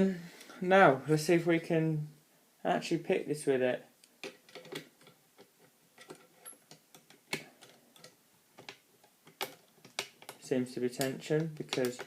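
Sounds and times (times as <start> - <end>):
lock picking metallic clicks: 4.0 - 12.0.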